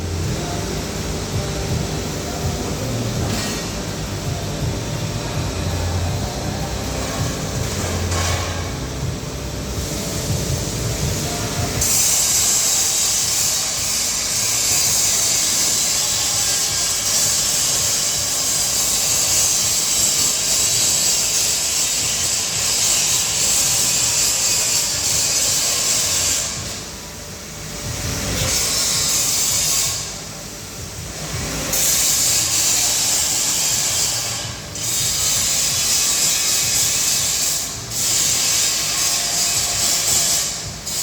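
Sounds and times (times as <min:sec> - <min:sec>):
loud steady hiss: 0:00.0 - 0:41.0.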